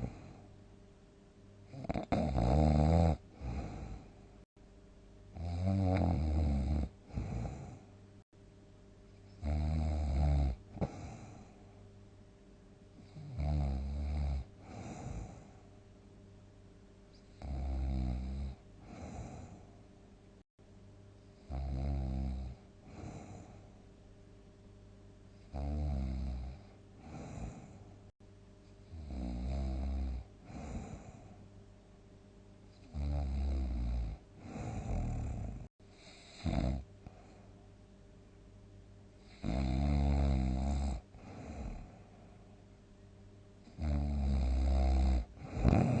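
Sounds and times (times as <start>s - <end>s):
person snoring heavily: 0.0s - 0.4s, 1.7s - 4.2s, 5.4s - 7.9s, 9.4s - 11.6s, 13.0s - 15.6s, 17.4s - 19.7s, 21.5s - 23.6s, 25.5s - 27.9s, 28.9s - 31.4s, 32.8s - 37.3s, 39.2s - 42.1s, 43.7s - 46.0s.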